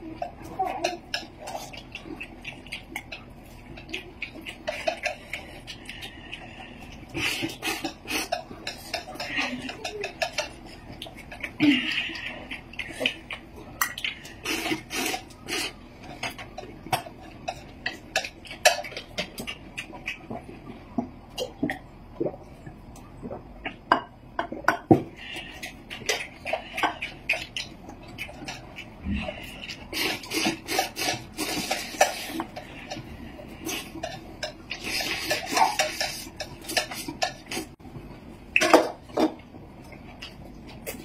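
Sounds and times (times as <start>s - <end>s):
utensils clinking against dishes: 7.2s - 13.2s, 28.2s - 37.8s.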